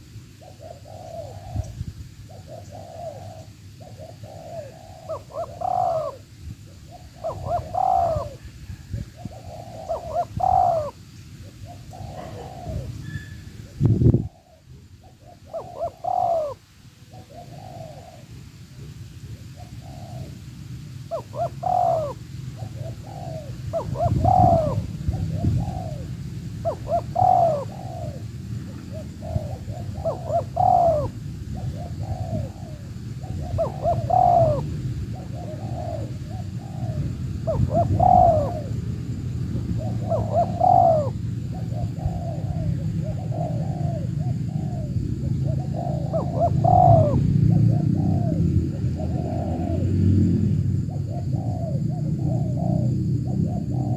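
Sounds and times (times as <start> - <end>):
doves cooing: 0.0 - 53.9
steady low rumble: 16.7 - 53.9.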